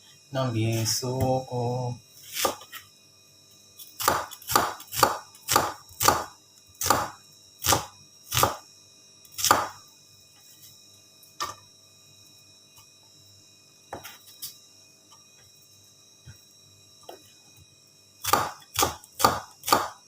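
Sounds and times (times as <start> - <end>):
knife chopping on cutting board: 2.3 - 2.7, 4.0 - 8.6, 9.4 - 9.8, 18.2 - 20.0.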